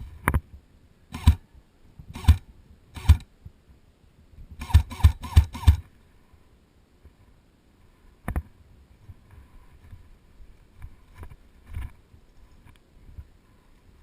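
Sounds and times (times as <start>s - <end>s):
airsoft gun shots: 1.1s - 1.4s, 2.1s - 2.4s, 3.0s - 3.2s, 4.6s - 5.8s.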